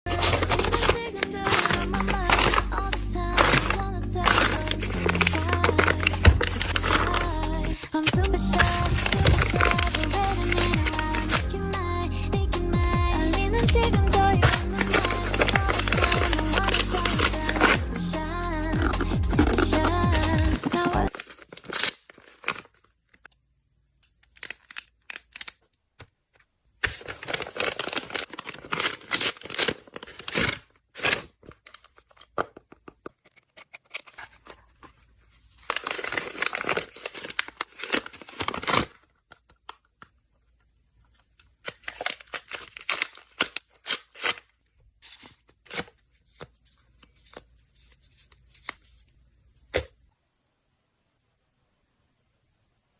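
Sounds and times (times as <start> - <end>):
packaging tearing and crinkling: 0.1 - 11.4, 14.3 - 17.8, 18.8 - 23.2, 24.2 - 25.6, 26.8 - 32.4, 35.5 - 40.0, 41.4 - 46.4.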